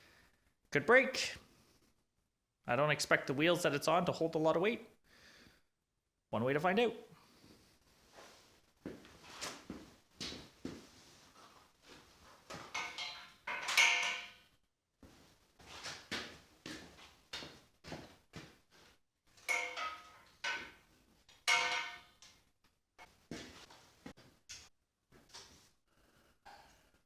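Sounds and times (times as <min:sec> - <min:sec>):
metal clamps clanking: 0:12.5 - 0:14.4, 0:19.4 - 0:20.8, 0:21.4 - 0:22.4.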